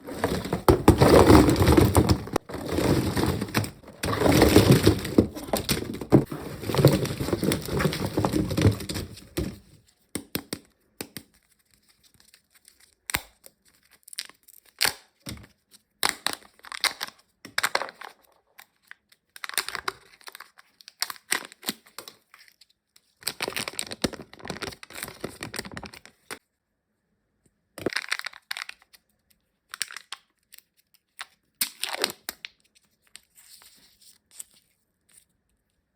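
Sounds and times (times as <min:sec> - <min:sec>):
plastic wrapping tearing and crinkling: 0:00.0 - 0:09.5, 0:23.2 - 0:26.4
packaging crackles and clicks: 0:00.0 - 0:09.6.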